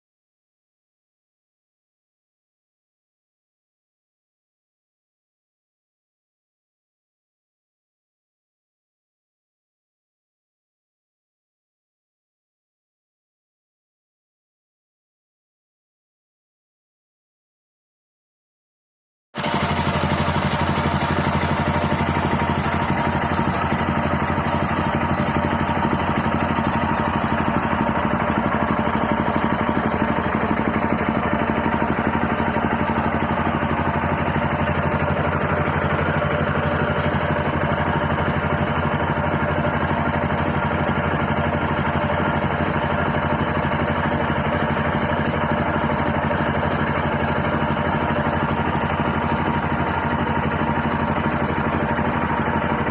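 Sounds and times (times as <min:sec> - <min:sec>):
motorcycle engine idling: 0:19.4 - 0:52.9.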